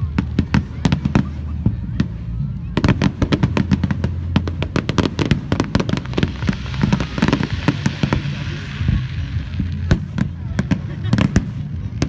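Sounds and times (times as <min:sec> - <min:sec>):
fireworks hissing spray: 0:00.0 - 0:12.0
fireworks popping: 0:00.0 - 0:12.0.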